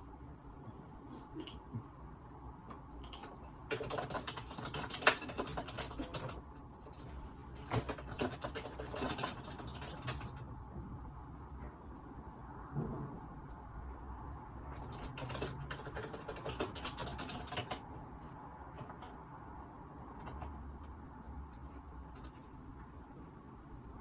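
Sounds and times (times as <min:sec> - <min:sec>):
computer keyboard typing: 0:03.0 - 0:10.4, 0:14.7 - 0:19.2, 0:20.1 - 0:22.7.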